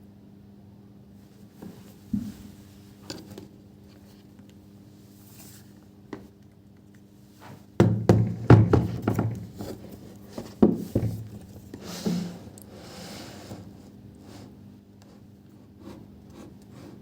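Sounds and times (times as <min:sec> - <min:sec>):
knocks and thumps of handling: 0:01.6 - 0:03.5, 0:07.4 - 0:12.5.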